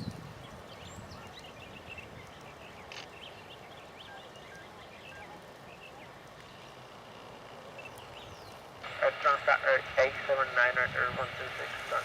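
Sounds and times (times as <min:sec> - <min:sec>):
outdoor hiss: 0:01.6 - 0:12.0.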